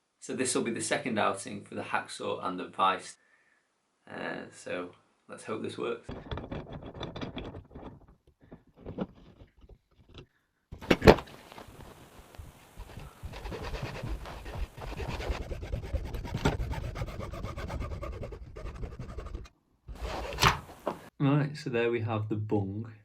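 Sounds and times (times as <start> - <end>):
hacksaw cutting plastic: 13.3 - 21.0.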